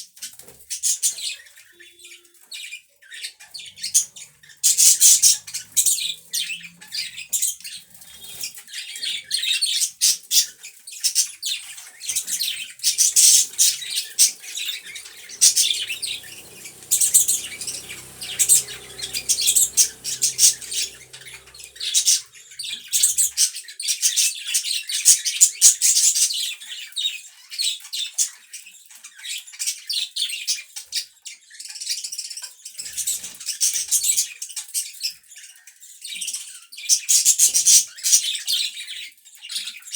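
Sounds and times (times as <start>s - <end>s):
budgerigars chattering and chirping: 12.8s - 22.1s.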